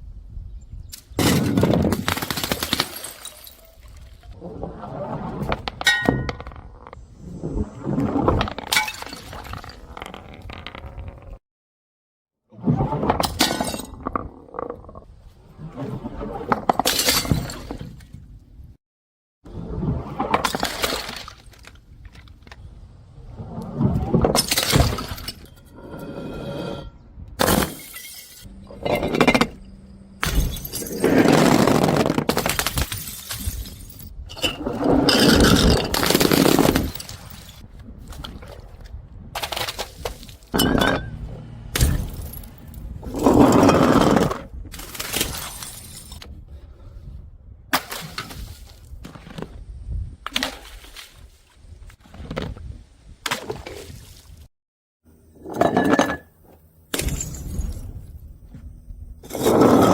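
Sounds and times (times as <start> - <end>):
glass bottles smashing: 1.2 - 3.9, 24.4 - 25.7, 27.4 - 37.6, 40.6 - 41.2, 41.8 - 43.3, 44.8 - 46.2, 56.9 - 58.0.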